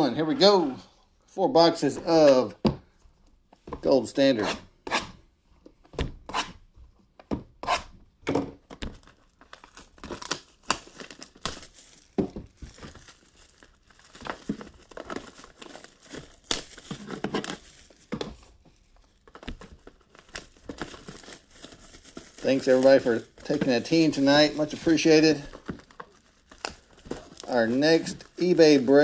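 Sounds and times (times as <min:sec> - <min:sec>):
plastic shrink-wrap crinkling and tearing: 0:08.8 - 0:29.0.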